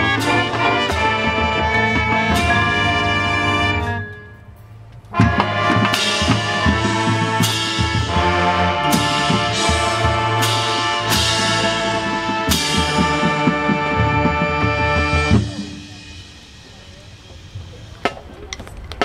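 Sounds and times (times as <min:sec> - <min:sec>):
brass section holding a chord: 0:00.0 - 0:04.2, 0:05.1 - 0:16.2
sharp percussion hits: 0:00.0 - 0:18.3
marching band playing: 0:00.0 - 0:18.5.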